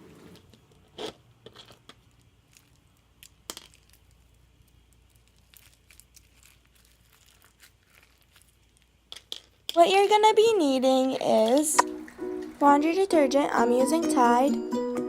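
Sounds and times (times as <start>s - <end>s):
objects being handled: 11.1s - 12.6s.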